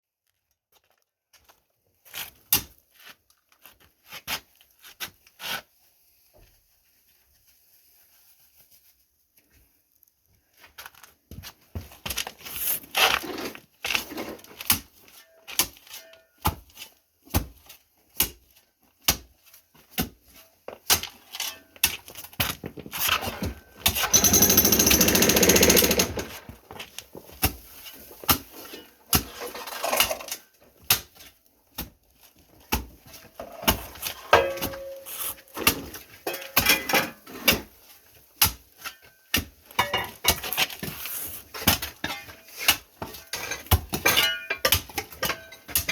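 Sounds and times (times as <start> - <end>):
tools knocking and clattering: 22.8 - 26.8, 33.4 - 35.0
jackhammer breaking concrete: 23.4 - 26.6.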